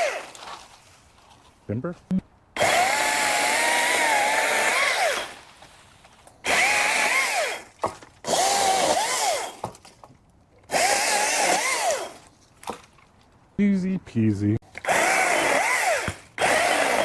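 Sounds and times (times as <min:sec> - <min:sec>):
chainsaw cutting wood: 0:00.0 - 0:00.6, 0:02.6 - 0:05.6, 0:06.4 - 0:09.9, 0:10.7 - 0:12.8, 0:14.7 - 0:17.0.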